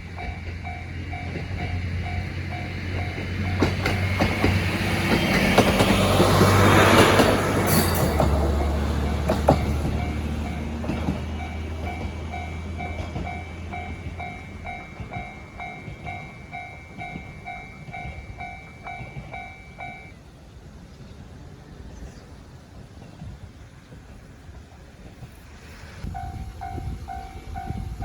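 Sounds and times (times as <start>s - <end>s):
diesel train engine drone: 0.0s - 28.0s
crossing signal electronic bell: 0.1s - 4.6s, 7.7s - 20.2s, 26.2s - 28.0s.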